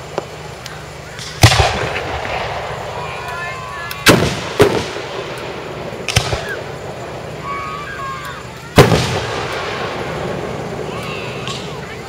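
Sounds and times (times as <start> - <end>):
firework crack: 0.0 - 12.0
firework boom with rumbling echo: 1.2 - 3.1, 4.0 - 7.3, 8.8 - 11.8.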